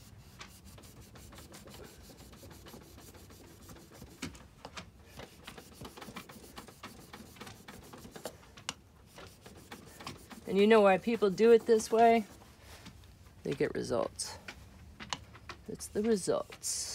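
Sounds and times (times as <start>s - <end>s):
knife scraping on sandpaper: 0.0s - 4.3s, 5.2s - 8.3s, 9.1s - 12.4s.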